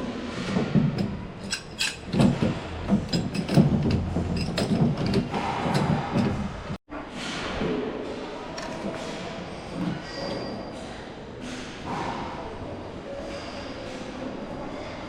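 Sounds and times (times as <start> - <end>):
hand tools clinking and knocking: 0.5 - 6.8.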